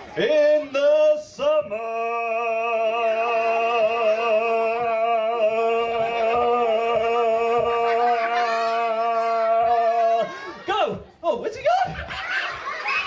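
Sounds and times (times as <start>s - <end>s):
man singing a long note: 0.2s - 10.2s
children's voices: 7.6s - 11.2s, 11.9s - 13.0s.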